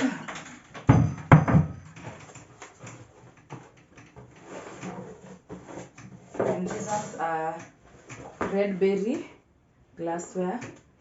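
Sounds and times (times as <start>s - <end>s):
kitchenware knocking: 0.7s - 2.2s.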